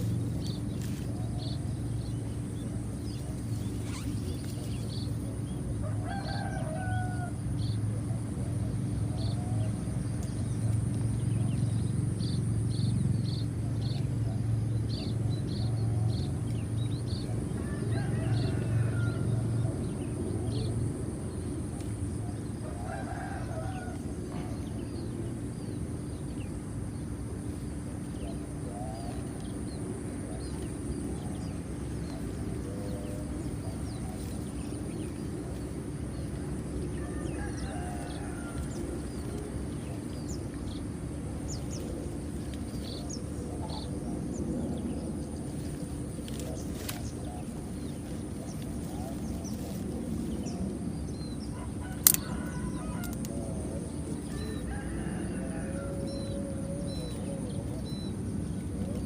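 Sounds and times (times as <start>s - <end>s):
low steady rumble: 0.0s - 59.0s
rooster crowing: 5.8s - 7.6s, 17.5s - 19.8s, 22.6s - 24.6s, 36.9s - 39.2s, 51.4s - 57.6s.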